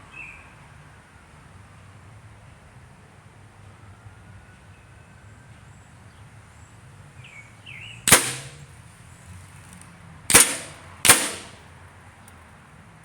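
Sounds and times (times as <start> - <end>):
air gun shots: 8.1 - 8.7, 10.3 - 11.6.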